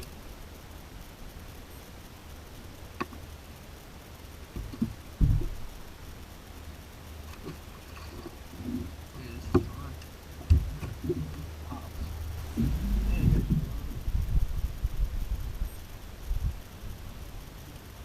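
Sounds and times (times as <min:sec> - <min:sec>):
low steady rumble: 0:00.0 - 0:18.0
knocks and thumps: 0:04.6 - 0:05.7, 0:07.4 - 0:09.8, 0:10.4 - 0:14.0.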